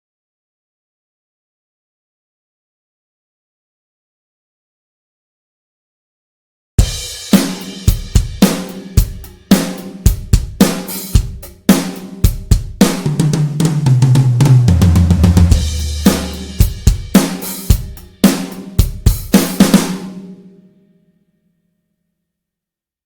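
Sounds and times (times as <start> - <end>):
descending drum fill: 6.8 - 20.6
drum kit playing a beat: 6.8 - 20.6.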